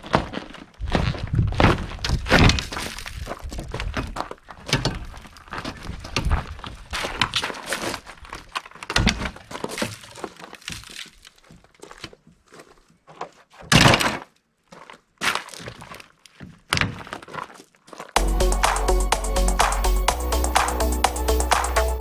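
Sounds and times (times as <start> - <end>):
material cracking and breaking: 0.0 - 12.1
music: 18.2 - 22.0.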